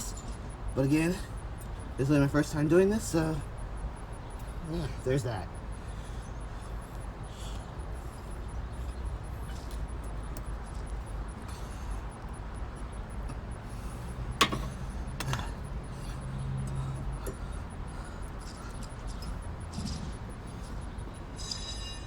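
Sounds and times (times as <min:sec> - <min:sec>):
sharp metallic clicks of tools: 0:14.4 - 0:15.5.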